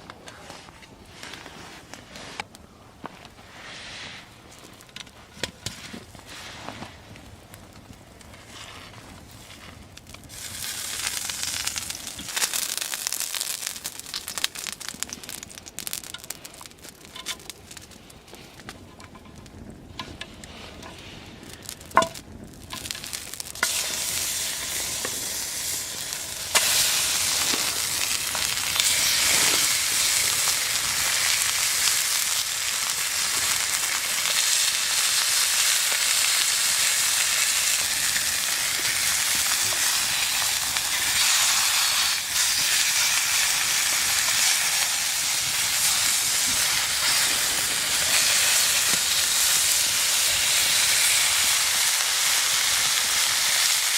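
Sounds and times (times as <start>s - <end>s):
meat sizzling: 9.4s - 17.9s, 21.4s - 53.9s.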